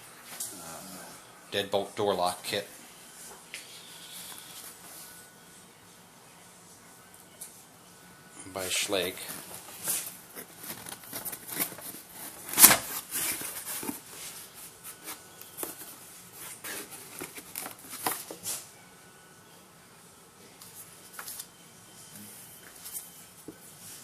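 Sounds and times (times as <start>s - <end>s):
cardboard packaging rustling: 9.2s - 18.4s.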